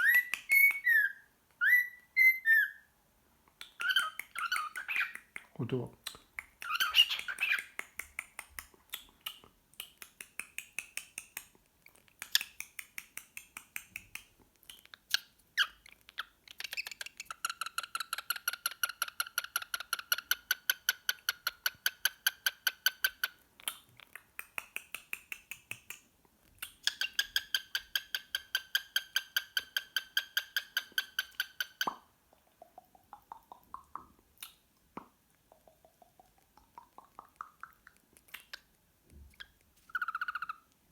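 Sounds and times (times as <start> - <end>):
cockatiel chirping: 0.0 - 2.9, 3.7 - 5.4, 6.1 - 7.8, 15.1 - 20.6, 26.7 - 32.0, 39.4 - 40.7.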